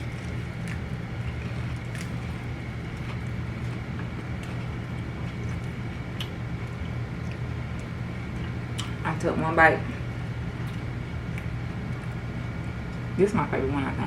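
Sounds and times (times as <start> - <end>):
chewing crunches: 0.0 - 9.0
air conditioning hum: 0.0 - 14.0.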